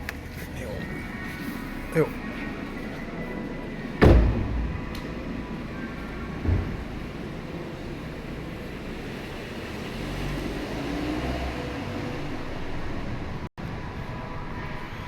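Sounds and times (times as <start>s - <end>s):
vehicle and road noise: 0.0s - 15.0s
low rumble: 3.8s - 9.0s.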